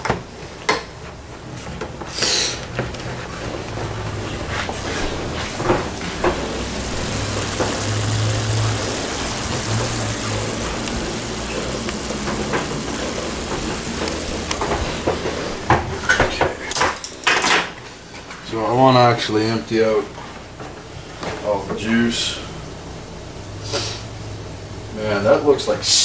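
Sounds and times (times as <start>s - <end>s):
meat sizzling in a frying pan: 5.6s - 17.5s, 23.6s - 25.2s.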